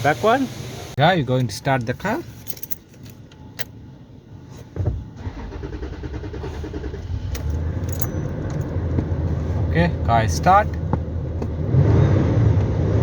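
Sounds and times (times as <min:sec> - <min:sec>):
car engine starting and running: 0:04.8 - 0:13.0.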